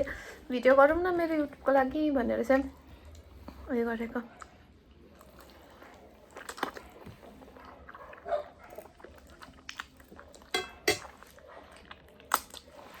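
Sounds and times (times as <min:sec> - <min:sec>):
eating clicks and wet smacks: 0:04.3 - 0:13.0.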